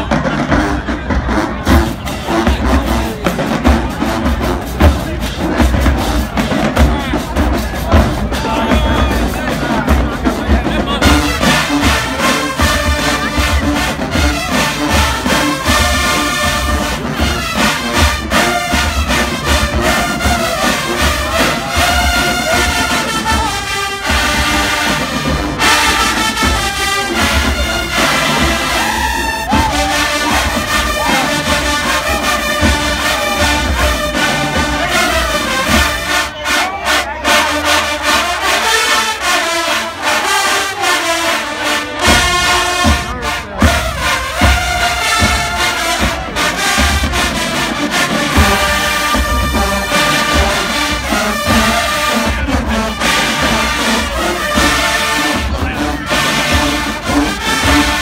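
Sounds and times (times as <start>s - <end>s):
brass section playing: 0.0s - 58.0s
crowd noise: 0.0s - 58.0s
driving drum beat: 0.0s - 58.0s.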